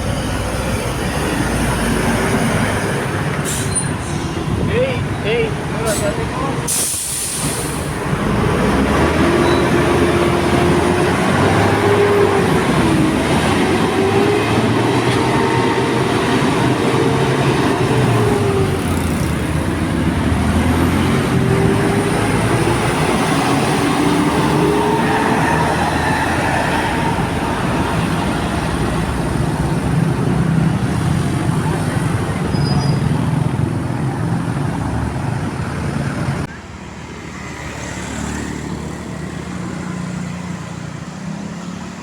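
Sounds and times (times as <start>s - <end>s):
bus engine running: 0.0s - 32.5s.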